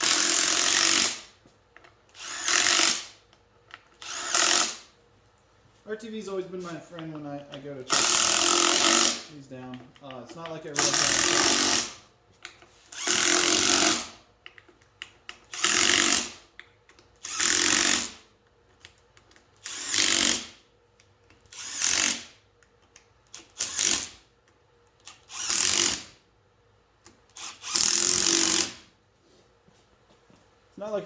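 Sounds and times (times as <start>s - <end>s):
impact driver hammering: 7.9s - 9.3s, 10.8s - 12.0s.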